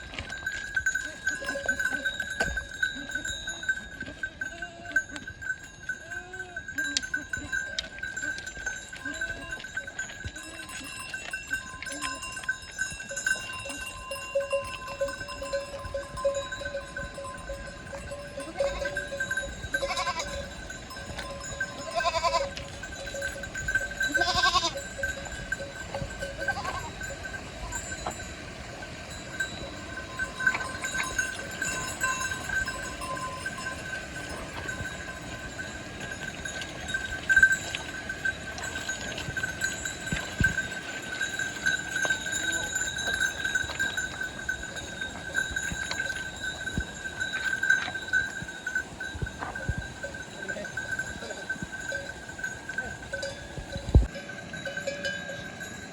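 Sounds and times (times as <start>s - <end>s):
goat bells ringing: 0.0s - 55.9s
goats bleating: 1.0s - 5.3s, 6.0s - 9.8s, 18.4s - 20.5s, 21.5s - 22.8s, 24.0s - 24.9s, 26.4s - 27.1s.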